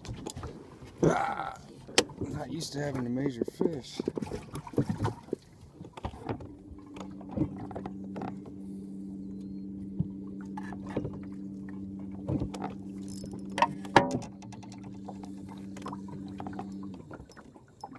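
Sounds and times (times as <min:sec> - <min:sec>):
small electric motor humming: 0:06.5 - 0:17.9.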